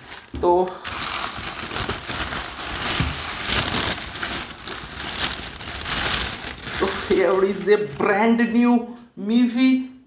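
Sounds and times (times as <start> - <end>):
packaging crinkling and rustling: 0.0 - 8.1.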